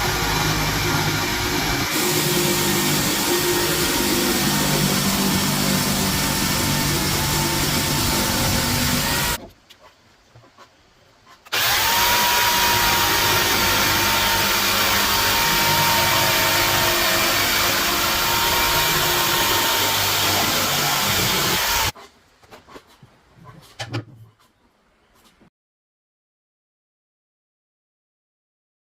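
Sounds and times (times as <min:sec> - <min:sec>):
electric power tool whining: 0:00.0 - 0:09.4, 0:11.5 - 0:21.9.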